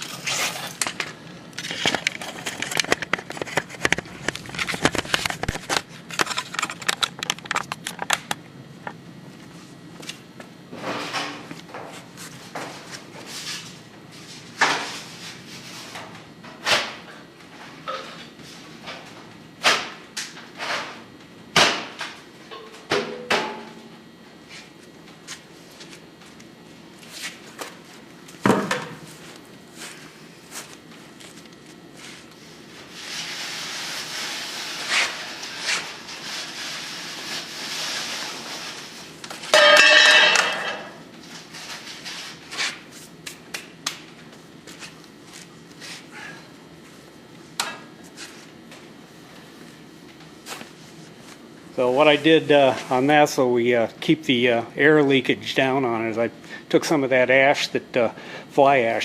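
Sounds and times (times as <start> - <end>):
metal parts knocking and scraping: 1.6 - 8.3.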